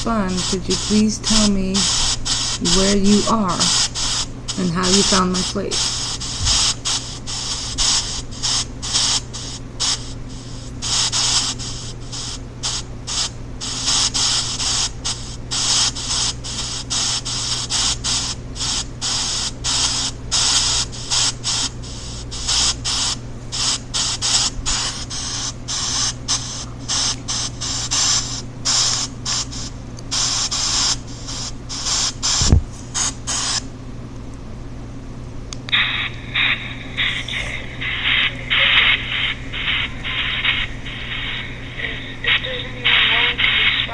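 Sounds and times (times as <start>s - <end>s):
hiss in rapid bursts: 0.0s - 33.6s, 35.7s - 43.9s
steady low hum: 0.0s - 43.9s
thump: 32.4s - 32.7s.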